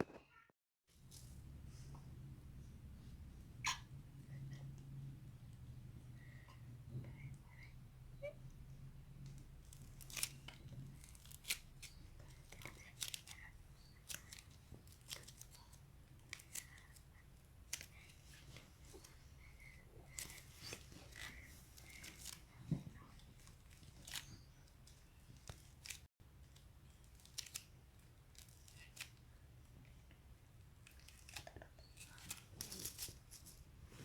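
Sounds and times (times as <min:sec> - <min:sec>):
low steady hum: 0:00.9 - 0:27.2.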